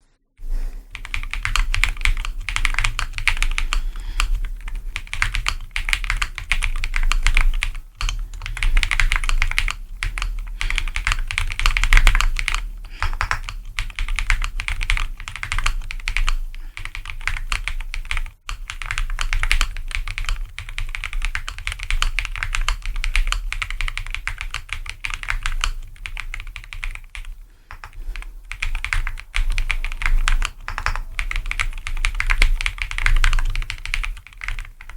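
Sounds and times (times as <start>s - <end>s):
mechanical keyboard typing: 0.9s - 34.9s.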